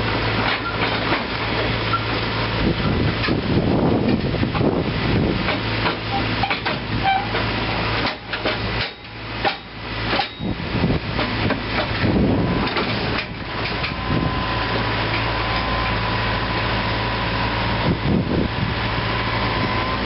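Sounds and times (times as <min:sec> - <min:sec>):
diesel engine humming: 0:00.0 - 0:20.0
sharp metallic knocks and clanks: 0:05.4 - 0:10.6, 0:11.2 - 0:12.0.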